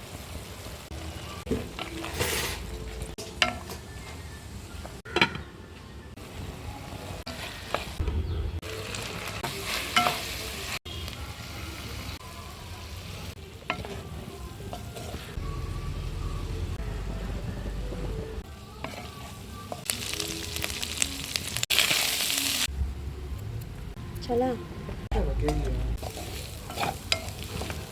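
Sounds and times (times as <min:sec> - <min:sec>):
spoon clinking and scraping pan: 0:01.5 - 0:04.0, 0:09.4 - 0:10.6, 0:13.6 - 0:15.4, 0:25.5 - 0:27.9
meat sizzling in a pan: 0:08.6 - 0:15.3, 0:18.8 - 0:22.7, 0:26.0 - 0:27.9.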